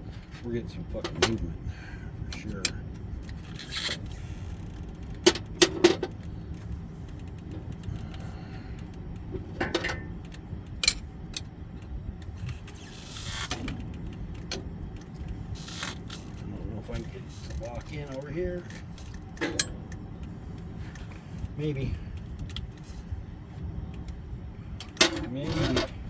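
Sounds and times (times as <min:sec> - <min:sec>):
metallic clanks and knocks: 0:05.2 - 0:06.2, 0:09.3 - 0:10.2, 0:18.8 - 0:20.0, 0:24.8 - 0:26.0.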